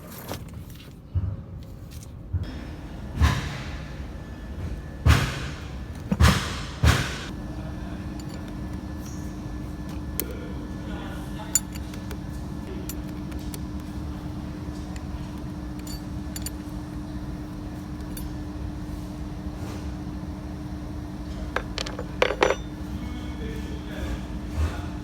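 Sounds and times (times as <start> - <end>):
steady low hum: 1.6 - 25.0
metal tools clinking: 8.1 - 9.2, 11.4 - 13.6, 15.7 - 16.8, 21.6 - 22.8.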